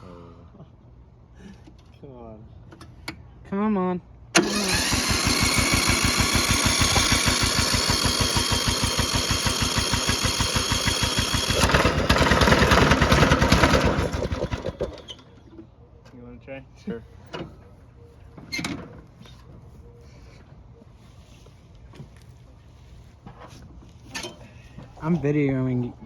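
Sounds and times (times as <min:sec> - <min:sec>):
engine cranking with starter whine: 0:04.4 - 0:15.6.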